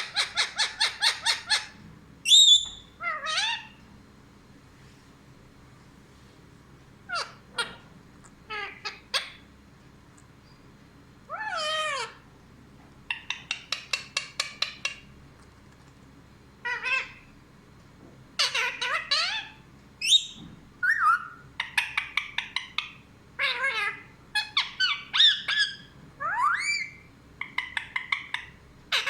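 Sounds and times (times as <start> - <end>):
parrot chirping: 0.0 - 3.8, 7.1 - 7.9, 8.5 - 9.5, 11.3 - 12.2, 13.1 - 15.1, 16.6 - 17.3, 18.4 - 29.0
parrot squawking and whistling: 0.0 - 3.8, 18.4 - 22.2, 23.4 - 29.0.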